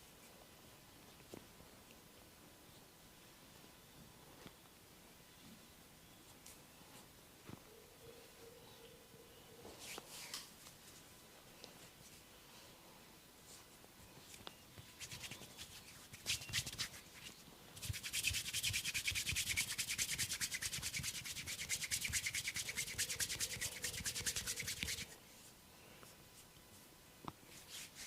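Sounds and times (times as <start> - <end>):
scratching on hair and scalp: 13.4 - 25.5, 26.4 - 28.0.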